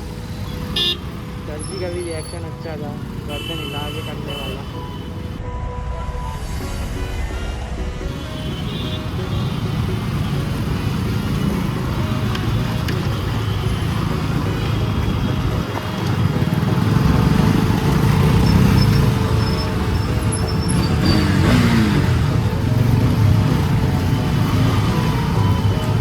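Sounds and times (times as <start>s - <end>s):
vehicle engine and road noise: 0.0s - 26.0s
falling pitched sound: 5.4s - 9.3s.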